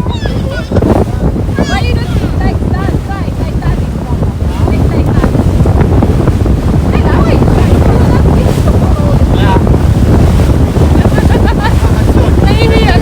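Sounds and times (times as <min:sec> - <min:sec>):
faint voices: 0:00.0 - 0:05.6
water rushing: 0:00.0 - 0:13.0
wind buffeting microphone: 0:00.0 - 0:13.0.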